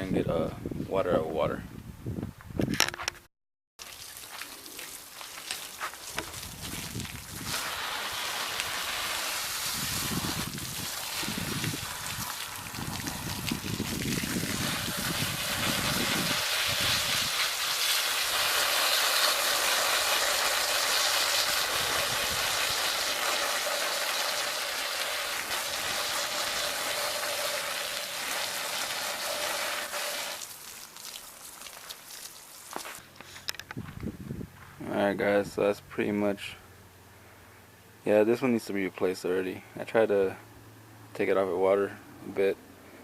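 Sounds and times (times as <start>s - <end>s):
running water rinsing filter: 3.8s - 33.0s.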